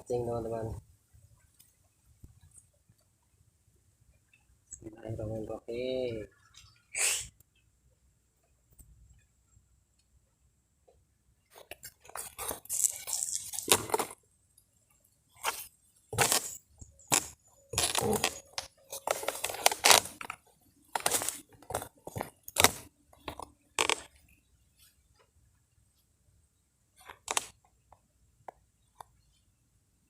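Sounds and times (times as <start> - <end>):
fishing tackle rustling and clinking: 11.5 - 24.4.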